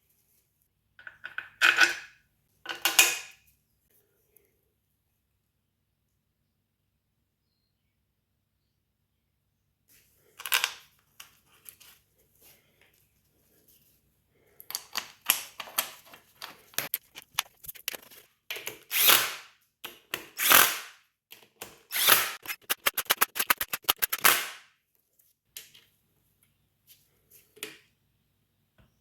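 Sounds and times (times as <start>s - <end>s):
power tool bursts: 21.9s - 24.5s.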